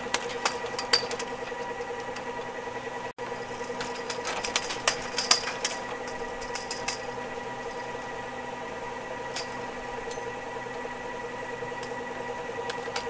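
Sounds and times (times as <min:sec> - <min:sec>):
clicks and rattles: 0:00.0 - 0:02.5, 0:03.6 - 0:07.2
ski lift motor hum: 0:00.0 - 0:13.0.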